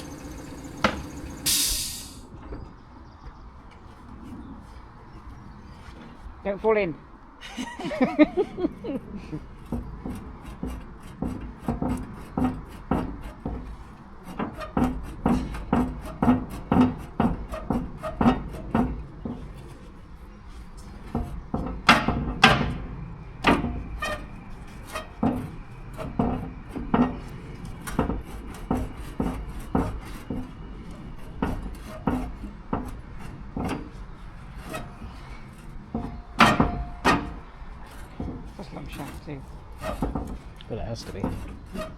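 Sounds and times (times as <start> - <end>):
tool knocking on steel: 0.0 - 1.5, 35.9 - 37.4.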